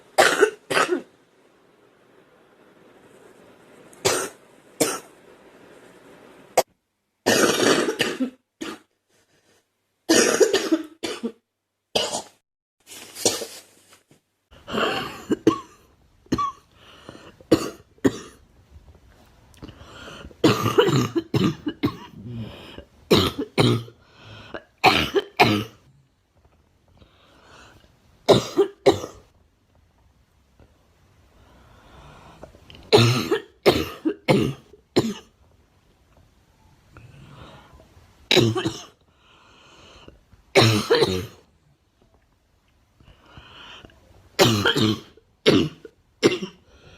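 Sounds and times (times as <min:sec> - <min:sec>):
girl coughing: 0:00.2 - 0:01.1, 0:07.3 - 0:08.9, 0:10.1 - 0:11.4, 0:14.7 - 0:16.6, 0:20.4 - 0:22.2, 0:24.8 - 0:25.8, 0:33.0 - 0:35.3, 0:38.3 - 0:39.0, 0:40.6 - 0:41.4, 0:44.4 - 0:46.6.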